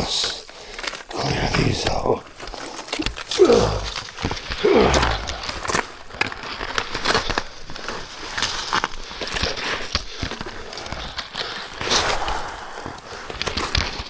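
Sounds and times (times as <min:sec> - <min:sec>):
brush crackling and snapping: 0:00.0 - 0:14.0
heavy labored breathing: 0:00.4 - 0:07.9, 0:09.0 - 0:13.6
crunching footsteps: 0:00.4 - 0:10.3.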